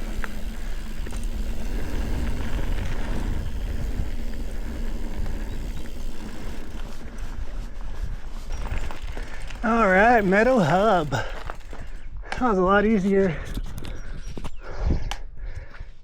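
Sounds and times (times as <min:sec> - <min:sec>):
wind rumble on microphone: 0:00.0 - 0:09.6
bike rattling: 0:00.0 - 0:14.5
bike tyres rolling on dirt: 0:00.0 - 0:14.5.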